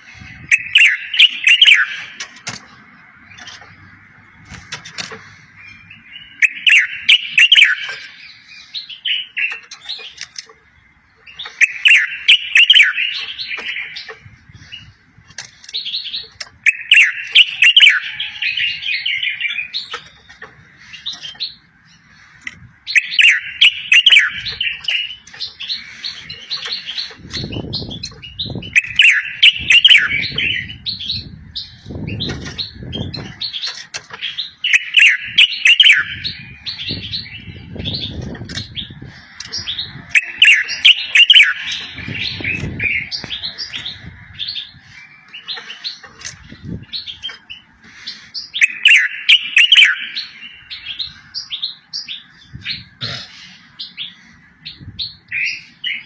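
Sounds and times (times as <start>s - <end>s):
songbird singing: 0.0s - 56.0s.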